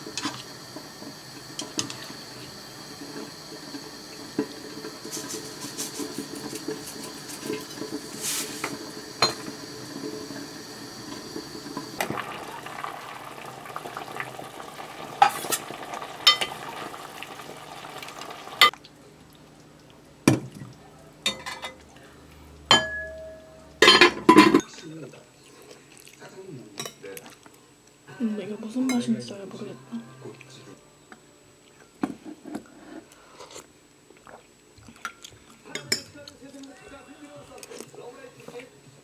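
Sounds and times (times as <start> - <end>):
food sizzling in a frying pan: 0.0 - 18.8
utensil scraping a pan: 4.4 - 9.6.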